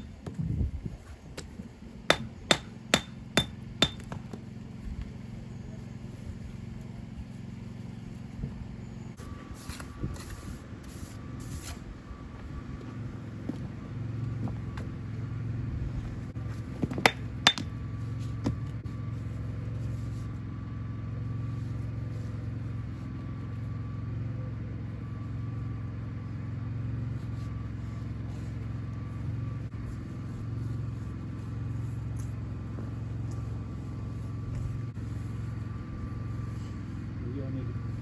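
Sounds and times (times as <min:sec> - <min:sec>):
low mechanical hum: 0:00.0 - 0:38.0
sharp knocks: 0:02.1 - 0:04.0.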